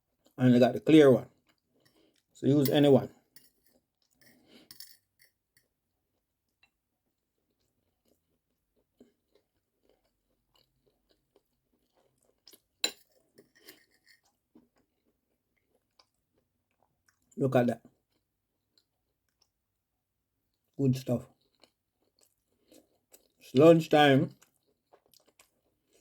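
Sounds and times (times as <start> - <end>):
person chewing food: 1.3 - 2.4, 6.1 - 19.8, 20.5 - 23.4, 24.3 - 26.0.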